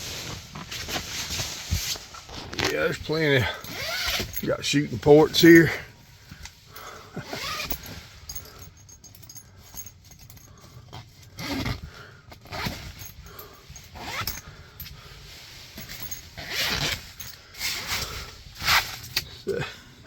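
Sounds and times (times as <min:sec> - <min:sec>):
tent fabric rustling: 0:00.0 - 0:08.3, 0:11.2 - 0:19.4
zippers being pulled: 0:02.3 - 0:04.6, 0:07.2 - 0:08.7, 0:11.2 - 0:14.5, 0:15.8 - 0:19.3.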